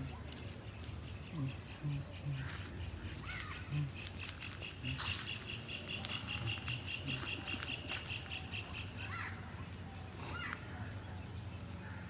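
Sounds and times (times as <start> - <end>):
high ticking bird notes: 0.8 - 9.3.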